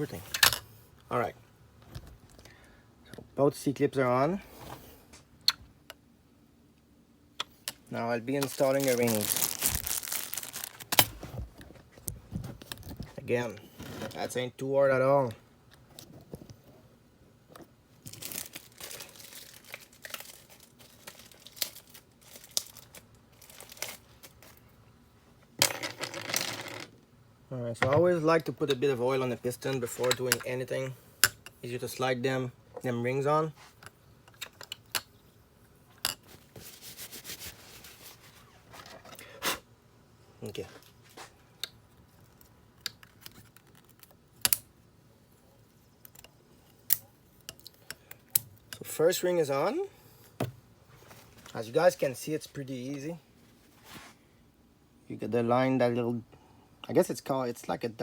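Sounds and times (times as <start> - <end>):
packaging crinkling and tearing: 8.3 - 11.3, 18.0 - 24.6.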